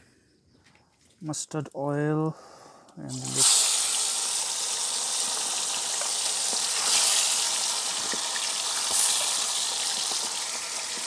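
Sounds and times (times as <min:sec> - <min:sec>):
food sizzling in oil: 0:03.1 - 0:11.0.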